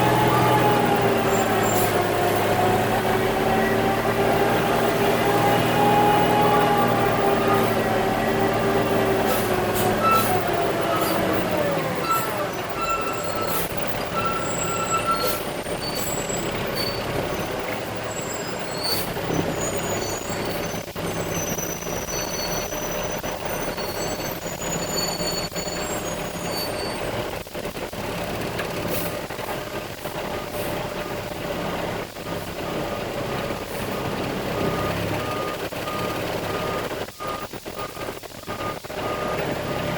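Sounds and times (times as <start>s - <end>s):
truck engine running: 0.0s - 39.9s
short high squeals: 9.0s - 17.2s, 18.1s - 27.2s.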